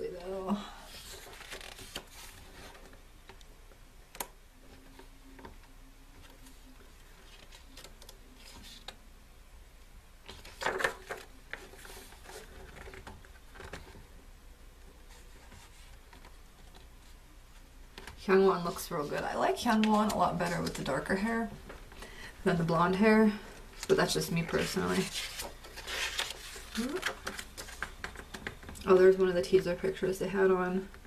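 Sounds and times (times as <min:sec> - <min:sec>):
photobook pages turning: 0:00.9 - 0:03.0, 0:06.2 - 0:09.0, 0:18.6 - 0:21.3, 0:23.8 - 0:28.6.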